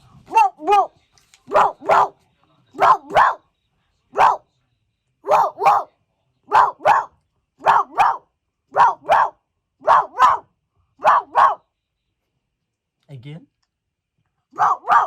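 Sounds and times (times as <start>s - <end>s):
dog barking: 0.3s - 0.9s, 1.5s - 3.5s, 4.1s - 4.5s, 5.2s - 11.7s, 14.5s - 15.0s.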